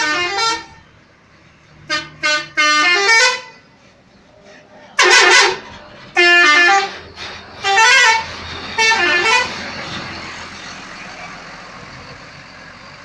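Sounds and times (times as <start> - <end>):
bus multi-tone horn tune: 0.0 - 1.0, 1.8 - 3.8, 5.0 - 10.3
bus engine running: 0.0 - 13.0.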